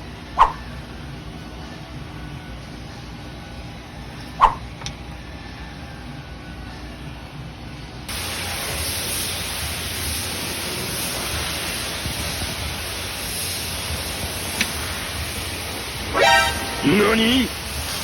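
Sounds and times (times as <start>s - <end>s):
steady hiss: 8.1s - 18.0s.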